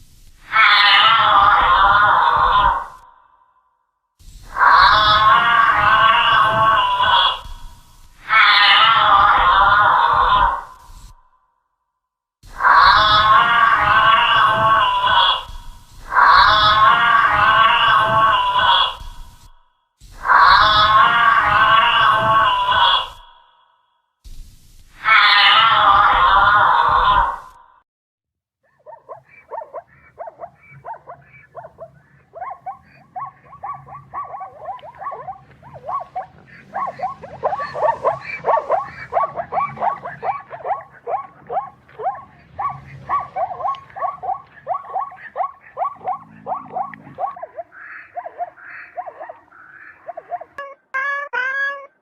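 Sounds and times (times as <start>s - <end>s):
animal calling rapidly: 0.4s - 3.0s, 4.5s - 11.1s, 12.5s - 19.5s, 20.2s - 23.4s, 25.0s - 27.6s, 28.7s - 52.0s
low rumble: 34.2s - 47.8s.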